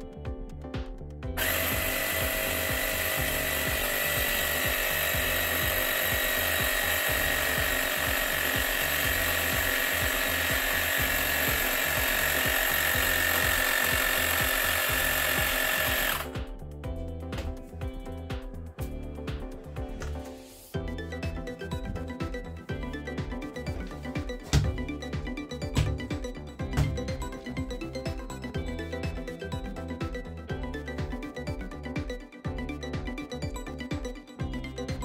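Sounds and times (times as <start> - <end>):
air compressor whining: 1.4 - 16.4.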